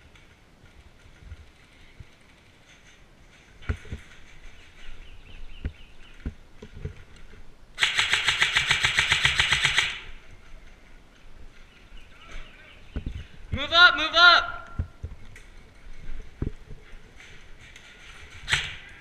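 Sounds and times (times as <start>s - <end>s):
airsoft rifle full-auto burst: 7.8s - 10.1s.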